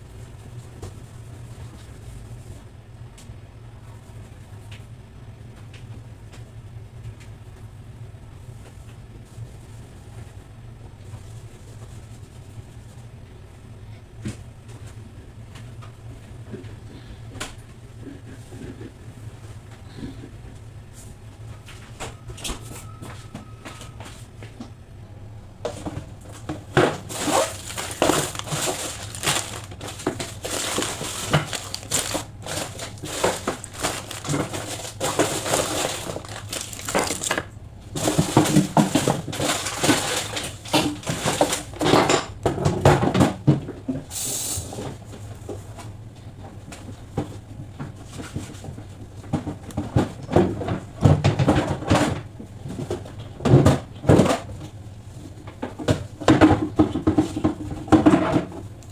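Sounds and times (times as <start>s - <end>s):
containers and shelves clattering: 25.6s - 43.8s, 48.1s - 54.8s, 55.6s - 58.9s
plastic crinkling: 26.3s - 41.8s.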